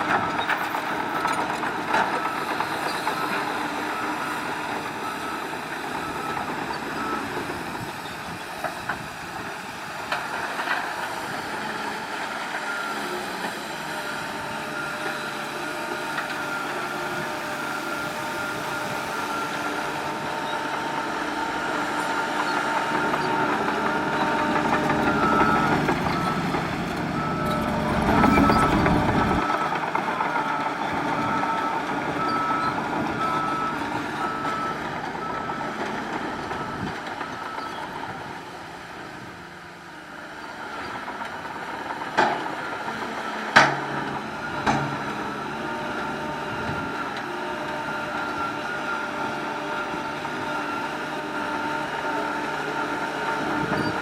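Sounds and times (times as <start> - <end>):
diesel engines of heavy machines: 0.0 - 54.0
reversing alarm beeping: 2.1 - 8.3, 14.1 - 30.3, 31.0 - 35.8.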